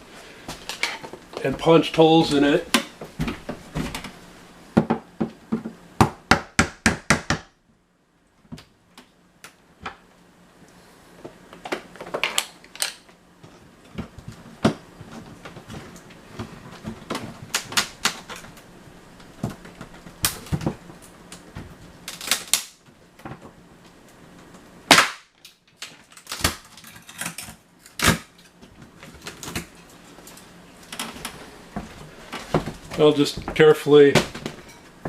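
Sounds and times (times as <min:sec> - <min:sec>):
wooden board cracking: 0:24.9 - 0:27.2.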